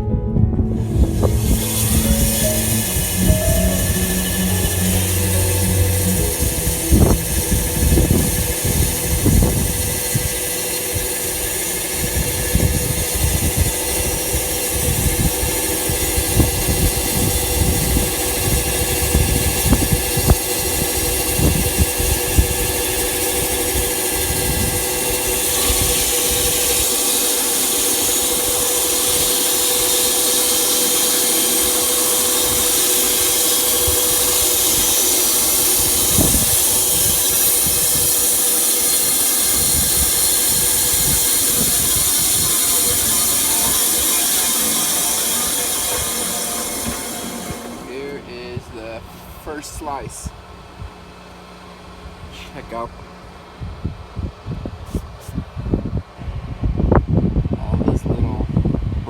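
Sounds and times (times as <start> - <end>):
low knocks and thumps: 0.0 - 9.8
bandsaw mill running: 0.8 - 53.6.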